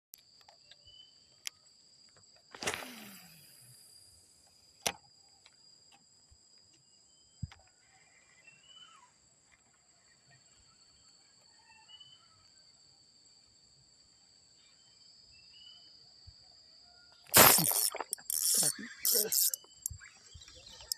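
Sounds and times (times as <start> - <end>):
insects chirring: 0.2 - 16.5, 17.1 - 20.9
sharp clicks: 17.3 - 20.0.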